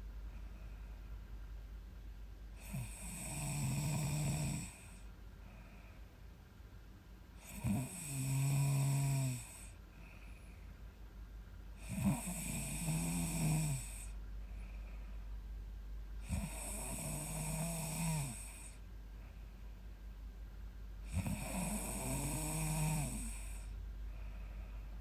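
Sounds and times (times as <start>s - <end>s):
woman snoring: 2.6s - 5.0s, 7.4s - 9.8s, 11.8s - 14.2s, 16.2s - 18.8s, 21.1s - 23.8s.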